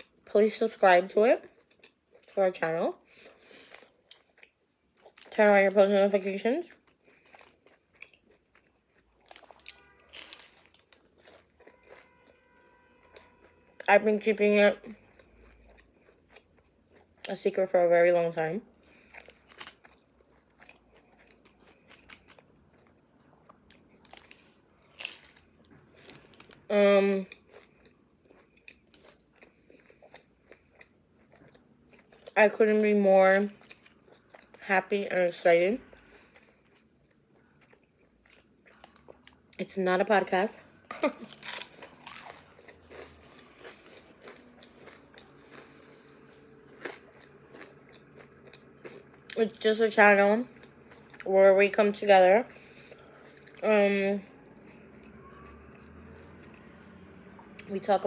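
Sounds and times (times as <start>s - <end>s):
person chewing food: 1.4s - 2.4s, 3.0s - 5.4s, 6.7s - 13.9s, 14.8s - 17.3s, 18.7s - 32.4s, 33.4s - 34.6s, 35.8s - 39.6s, 40.6s - 49.4s, 50.0s - 51.3s, 52.4s - 53.6s, 54.2s - 57.7s
food crunching: 3.1s - 14.0s, 14.8s - 17.5s, 18.3s - 34.6s, 35.3s - 57.7s.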